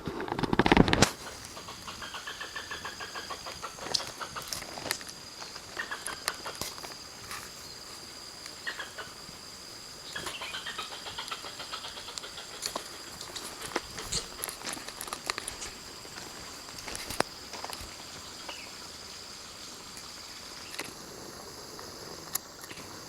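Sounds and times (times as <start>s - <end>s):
animal rapid pulsed calls: 1.0s - 4.9s, 8.6s - 14.6s.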